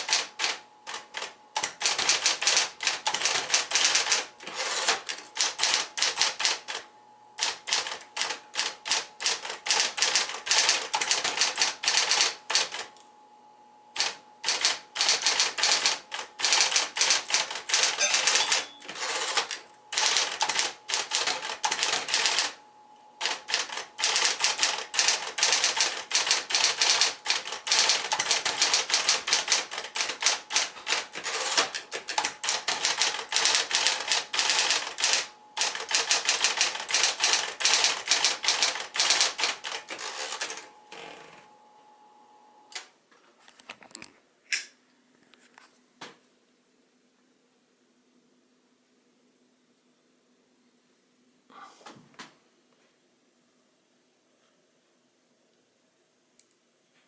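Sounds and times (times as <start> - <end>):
electric typewriter typing: 0.0 - 12.9, 14.0 - 22.6, 23.2 - 41.4.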